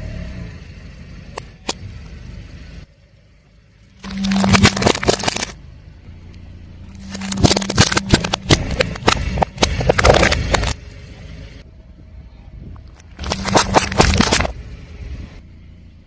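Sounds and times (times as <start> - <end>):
car engine hum: 0.0 - 16.0
tyre crushing something crunchy: 4.0 - 5.6, 6.9 - 10.8, 13.1 - 14.5.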